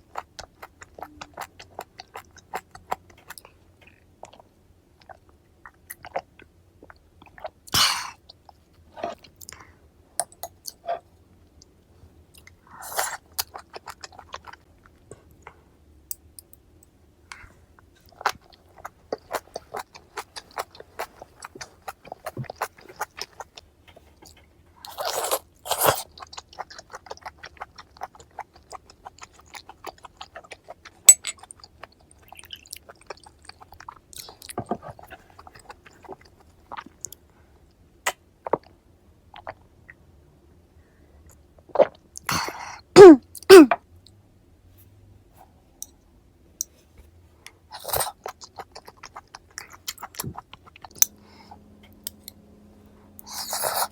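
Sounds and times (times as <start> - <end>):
chewing raw fish with bones: 17.4 - 37.2, 47.7 - 51.2.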